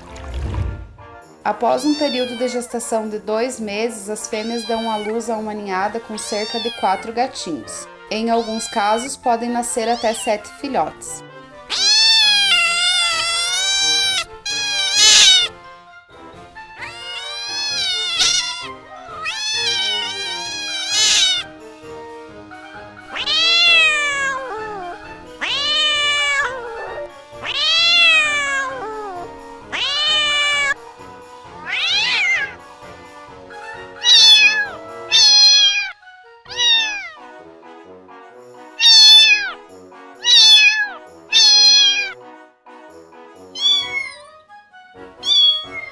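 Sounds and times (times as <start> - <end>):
soft background music: 0.0 - 45.9
cat meowing: 1.7 - 2.7, 4.3 - 5.2, 6.0 - 7.4, 8.2 - 9.2, 9.8 - 10.5, 11.6 - 15.5, 16.8 - 21.5, 23.0 - 30.8, 31.5 - 32.6, 33.8 - 37.3, 38.8 - 39.6, 40.2 - 42.2, 43.5 - 44.4, 45.2 - 45.9.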